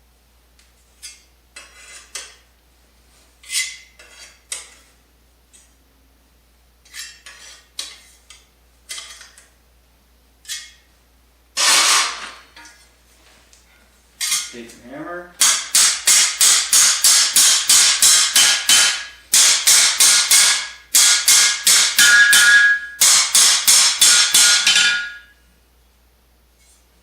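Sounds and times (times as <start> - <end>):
sheet metal clinking and scraping: 11.6 - 12.7.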